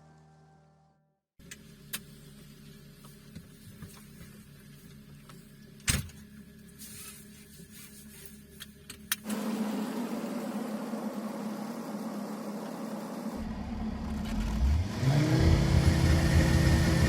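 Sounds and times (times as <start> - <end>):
car engine running: 9.5 - 17.0
low hum: 10.0 - 17.0.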